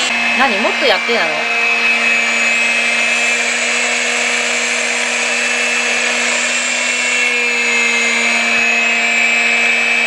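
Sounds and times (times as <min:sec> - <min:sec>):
vacuum cleaner whining: 0:00.0 - 0:10.0.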